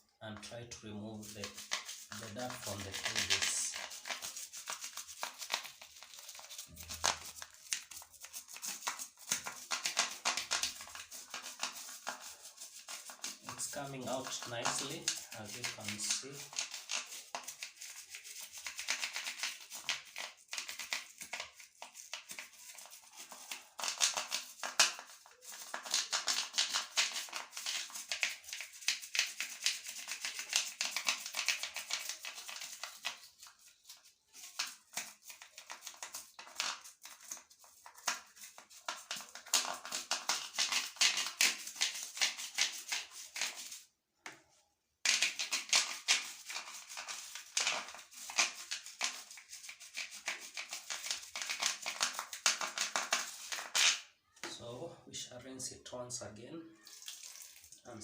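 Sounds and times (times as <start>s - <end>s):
bristle brush scrubbing plastic: 1.1s - 44.3s, 45.0s - 54.1s.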